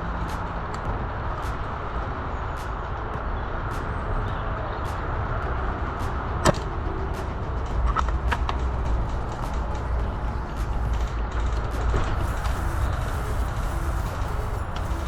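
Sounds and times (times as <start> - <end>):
low outdoor rumble: 0.0 - 15.0
sharp crack: 4.8 - 15.0.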